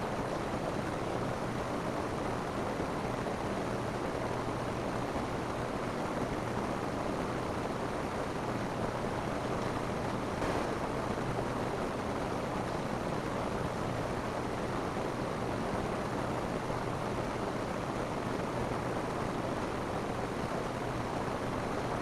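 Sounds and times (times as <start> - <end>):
rain falling on a roof: 0.2 - 22.0.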